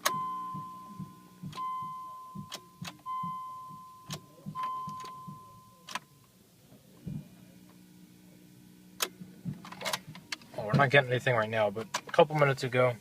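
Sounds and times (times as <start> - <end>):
car warning chime beeps: 0.0 - 6.3.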